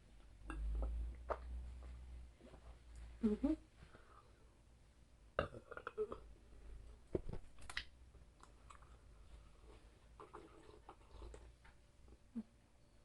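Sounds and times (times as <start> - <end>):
person chewing food: 7.6 - 11.6.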